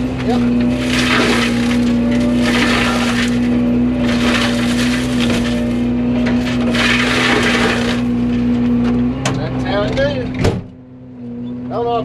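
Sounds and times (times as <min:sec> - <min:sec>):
mulcher shredding brush: 0:00.0 - 0:09.1
excavator engine hum: 0:00.0 - 0:12.0.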